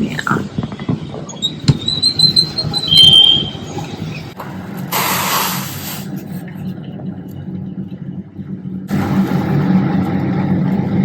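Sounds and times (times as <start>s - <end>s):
street traffic: 0.0s - 11.0s
high thin squeal: 1.8s - 3.8s.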